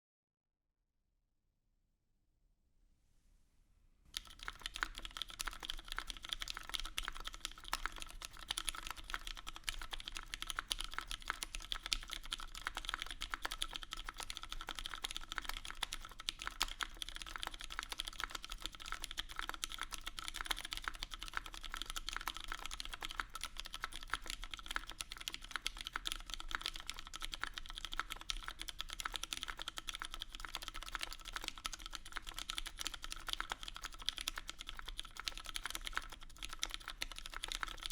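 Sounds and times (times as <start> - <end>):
fast typing on mechanical keyboard: 4.2 - 37.9.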